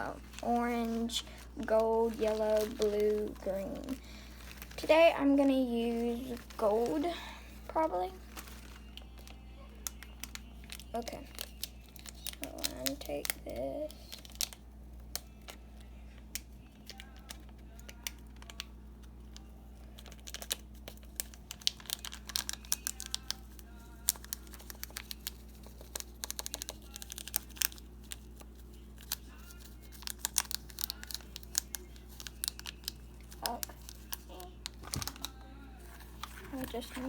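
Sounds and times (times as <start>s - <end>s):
steady low hum: 0.0s - 21.6s
plastic packet crinkling: 0.0s - 37.0s.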